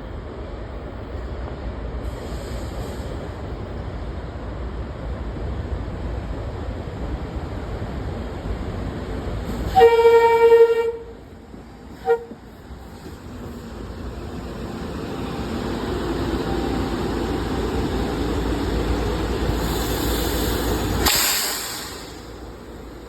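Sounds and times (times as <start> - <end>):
train rumbling: 0.0 - 23.0
hiss: 2.0 - 3.4, 18.7 - 23.0
train horn blasts: 9.7 - 11.2, 12.0 - 12.4.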